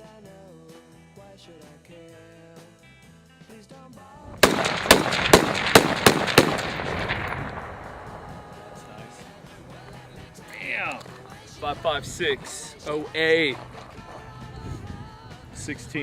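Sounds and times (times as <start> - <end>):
background music: 0.0 - 16.0
gunshot echo: 4.4 - 9.6
rifle gunshots: 4.4 - 9.9.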